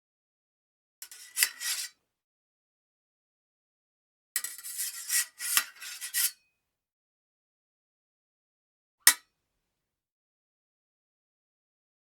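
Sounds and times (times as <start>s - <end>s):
sabre blade scraping on metal: 1.1s - 1.9s, 4.4s - 6.3s.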